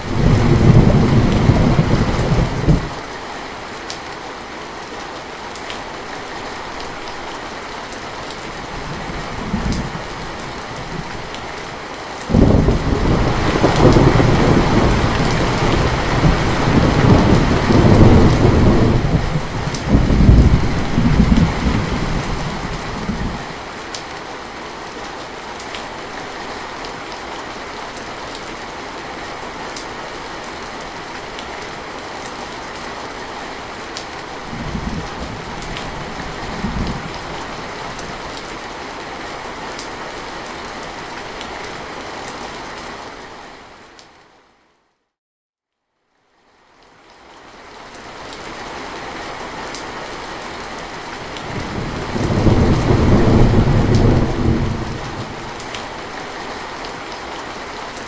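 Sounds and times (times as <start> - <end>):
thunder rolling: 0.0 - 2.9, 12.3 - 23.4, 51.5 - 55.8
rain hissing: 8.0 - 23.7.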